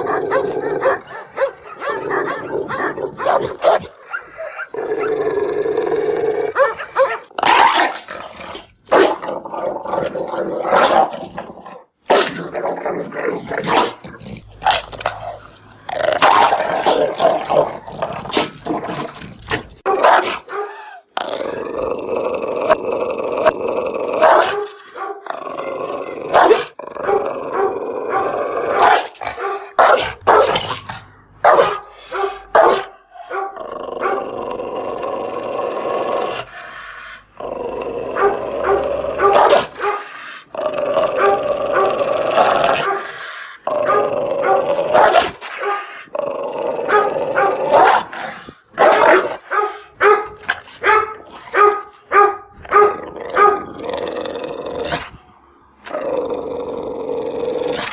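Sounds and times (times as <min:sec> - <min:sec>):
dog barking: 0:00.0 - 0:05.2, 0:06.5 - 0:07.8, 0:19.8 - 0:20.9, 0:24.2 - 0:25.3, 0:26.3 - 0:30.8, 0:31.4 - 0:34.3, 0:38.2 - 0:40.2, 0:41.2 - 0:42.0, 0:42.8 - 0:43.2, 0:43.8 - 0:46.0, 0:46.9 - 0:48.1, 0:48.8 - 0:53.8
dog growling: 0:00.0 - 0:57.9.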